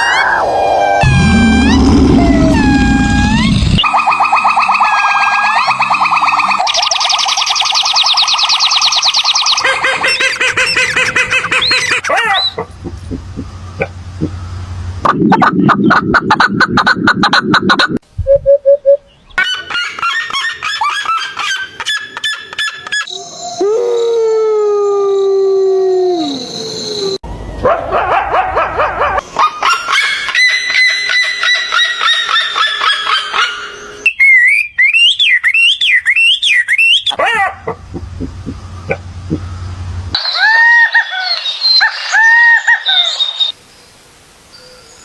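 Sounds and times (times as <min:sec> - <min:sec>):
long falling calls: 0:00.0 - 0:15.1, 0:36.5 - 0:41.2
wavering warbling call: 0:00.0 - 0:21.5, 0:36.8 - 0:40.2
rapid pulsed animal calls: 0:01.0 - 0:17.4, 0:37.0 - 0:40.2.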